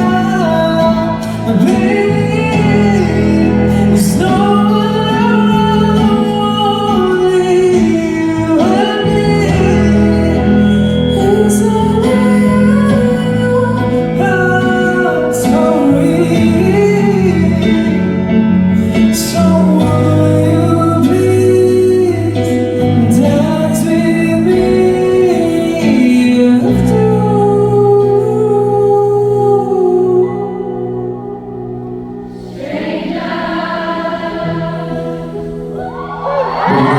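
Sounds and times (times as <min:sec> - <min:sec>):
guitar and band accompaniment: 0:00.0 - 0:29.1
person singing pop song: 0:00.0 - 0:36.9.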